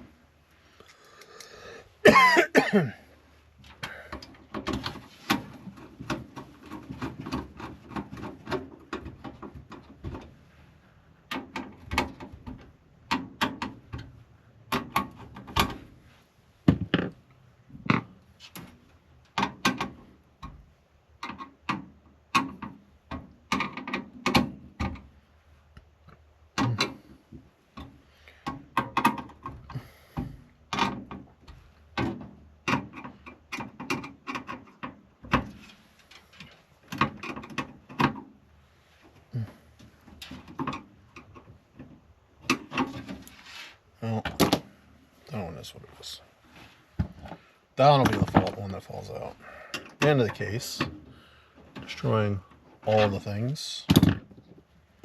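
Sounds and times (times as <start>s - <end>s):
computer hardware clicks and knocks: 26.6s - 27.0s.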